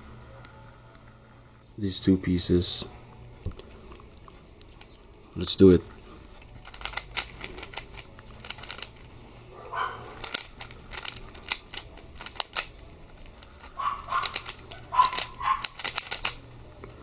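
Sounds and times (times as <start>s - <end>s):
puzzle cube plastic clicks: 6.5s - 9.1s, 10.1s - 16.4s.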